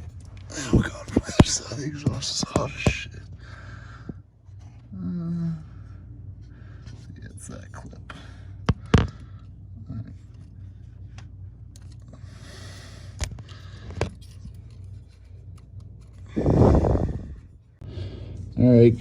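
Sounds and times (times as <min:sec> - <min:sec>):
pliers clicking and scraping metal: 0:13.2 - 0:16.3.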